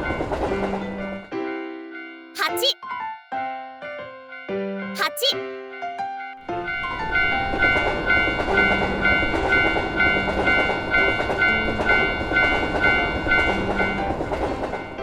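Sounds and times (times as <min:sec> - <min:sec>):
railroad crossing bell ringing: 0:06.6 - 0:15.0.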